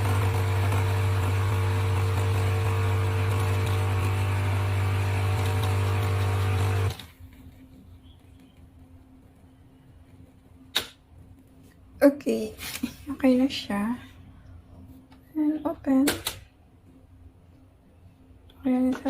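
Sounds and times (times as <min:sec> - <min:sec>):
coffee machine pump humming: 0:00.0 - 0:08.6.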